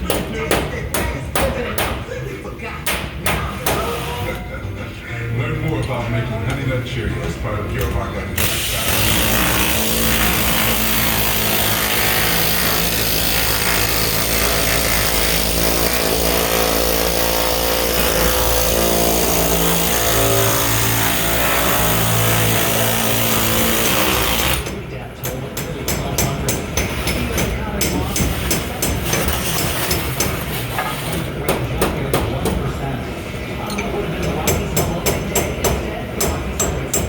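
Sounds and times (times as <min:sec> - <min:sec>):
air hammer rattling on sheet metal: 0:26.0 - 0:32.0.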